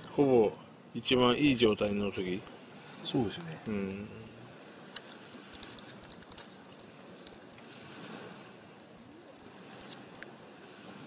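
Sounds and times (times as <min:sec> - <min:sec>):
outdoor background hiss: 0:00.0 - 0:11.0
small clicks and rustles: 0:04.2 - 0:07.7, 0:08.8 - 0:10.3.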